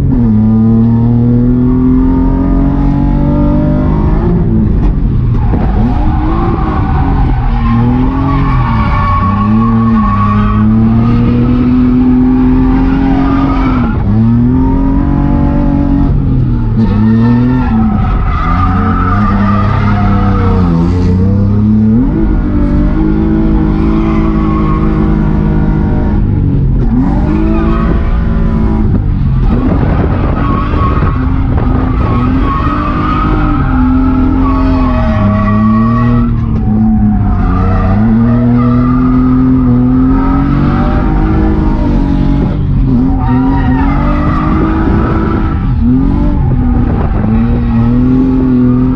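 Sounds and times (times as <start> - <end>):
car engine revving: 0.0 - 48.9
tyres skidding: 0.0 - 48.9.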